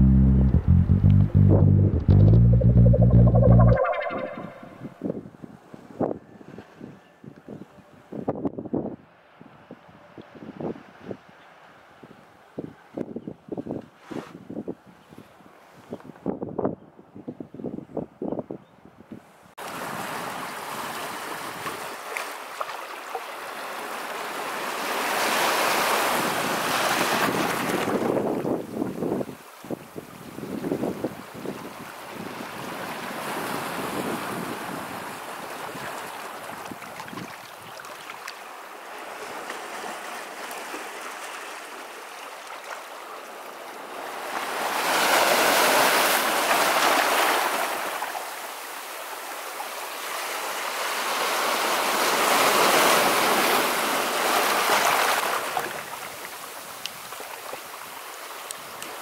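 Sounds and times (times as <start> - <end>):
sea: 2.6 - 16.4, 19.1 - 59.0.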